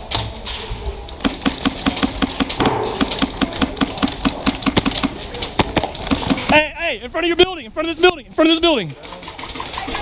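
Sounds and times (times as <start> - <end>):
airsoft gun firing: 1.2 - 6.6.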